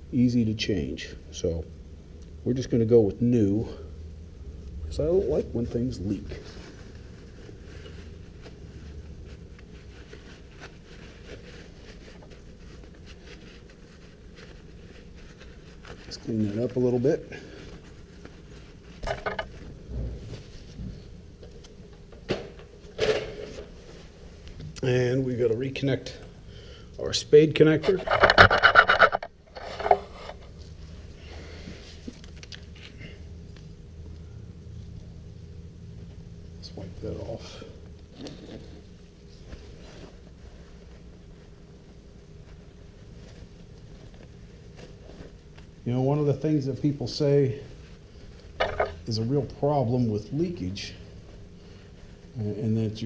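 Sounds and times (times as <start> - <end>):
steady low hum: 0.0 - 53.0
handling rustle: 5.1 - 22.1, 38.0 - 53.0
small clicks and rustles: 31.9 - 34.2.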